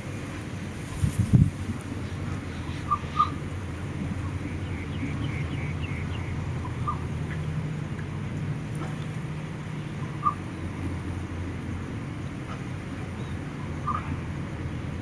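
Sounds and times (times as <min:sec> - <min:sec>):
steady low rumble: 0:00.0 - 0:15.0
birds chirping: 0:04.1 - 0:07.1.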